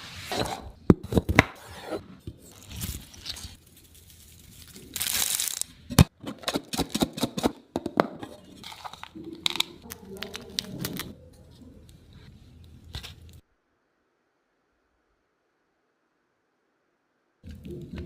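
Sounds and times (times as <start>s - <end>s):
crisp food crunching: 2.7s - 5.8s.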